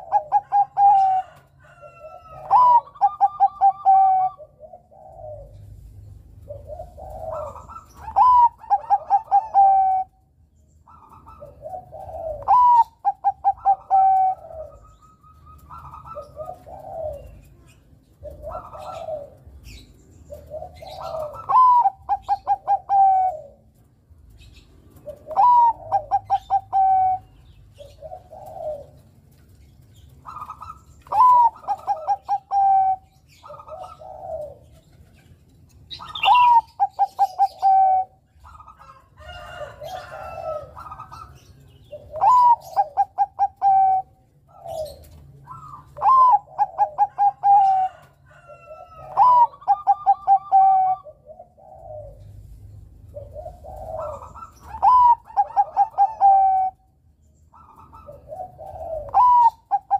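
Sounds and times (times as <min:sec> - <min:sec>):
dove cooing: 0:00.0 - 0:59.9.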